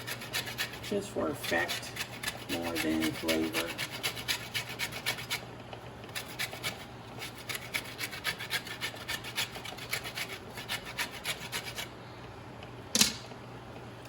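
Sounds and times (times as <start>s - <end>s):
peel rasping on grater: 0.0s - 5.4s, 6.1s - 11.9s.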